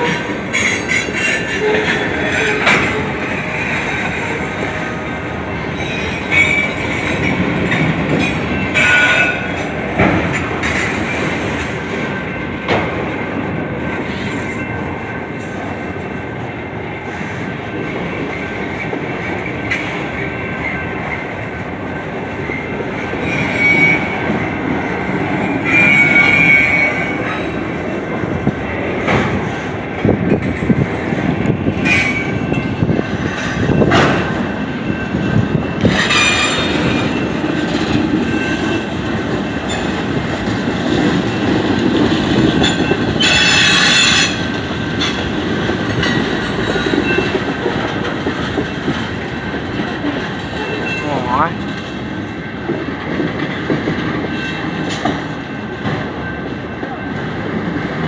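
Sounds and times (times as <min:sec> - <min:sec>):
train wheels rumbling on rails: 0:00.0 - 0:58.0
high-pitched wheel squeals: 0:23.2 - 0:24.4, 0:25.4 - 0:27.5, 0:42.6 - 0:44.4.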